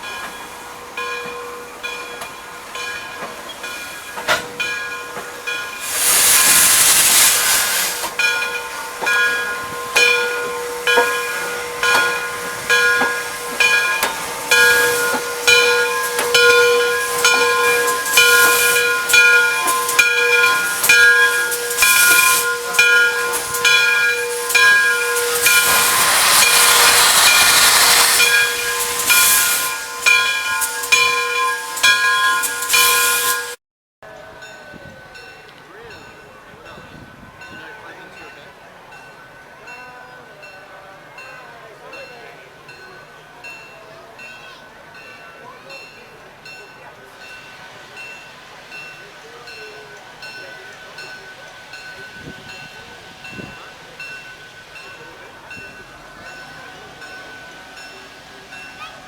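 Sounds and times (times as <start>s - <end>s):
steady ringing locomotive beat: 0.0s - 33.6s, 34.4s - 59.0s
steam hiss bursts: 3.6s - 33.6s.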